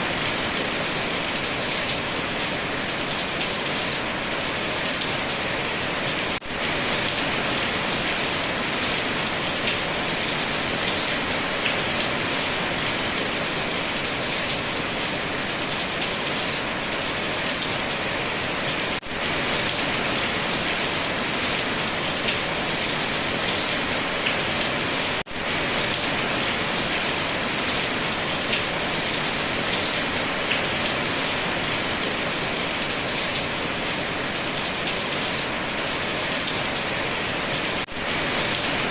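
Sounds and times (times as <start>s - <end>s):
steady rain patter: 0.0s - 38.9s.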